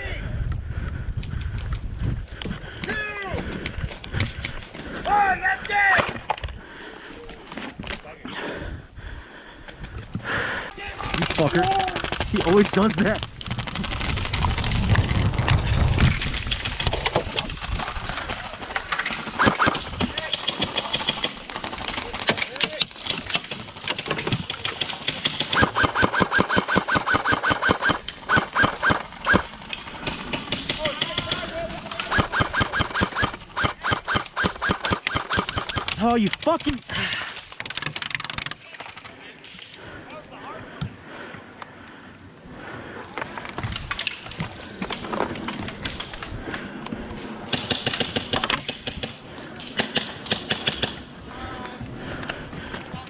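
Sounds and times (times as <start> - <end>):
rapid sharp clicks: 11.1 - 39.6
distant airsoft guns ticking: 18.8 - 37.8
airsoft rifle firing: 19.3 - 21.4, 25.0 - 29.5, 30.5 - 36.0.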